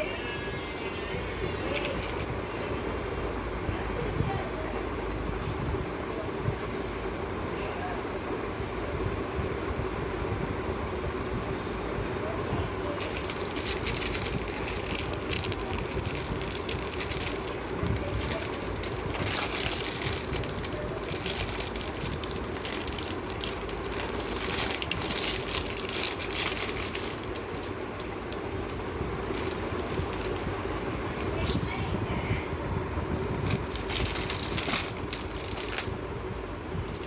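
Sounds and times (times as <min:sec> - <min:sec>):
plastic packaging crackling: 0:01.6 - 0:02.3, 0:13.0 - 0:31.4, 0:33.2 - 0:37.0
background hum: 0:10.4 - 0:37.0.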